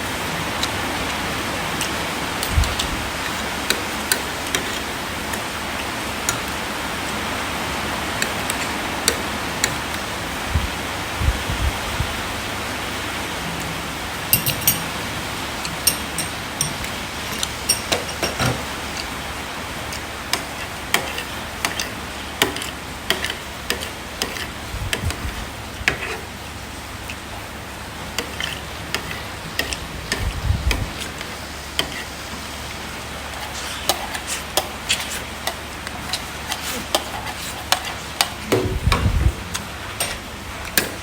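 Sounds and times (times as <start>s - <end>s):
steady low hum: 0.0s - 41.0s
metal utensils tapping a dish: 14.3s - 15.0s, 15.6s - 19.1s, 19.9s - 25.1s
dull low thumps: 38.5s - 39.6s.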